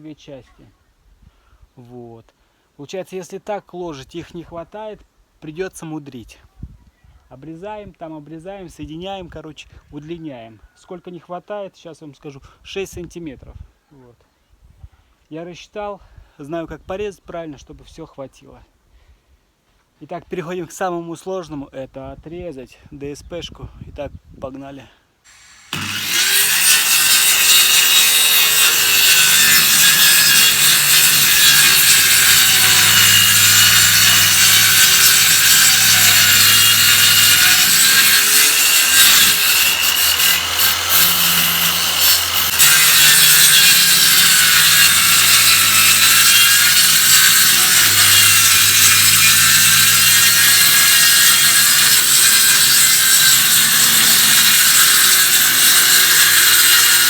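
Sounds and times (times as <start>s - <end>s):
saw cutting chipboard: 25.3s - 57.0s.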